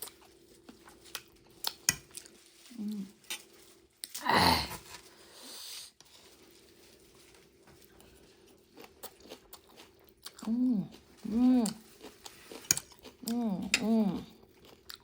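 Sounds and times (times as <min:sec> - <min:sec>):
person humming: 0:13.2 - 0:14.3.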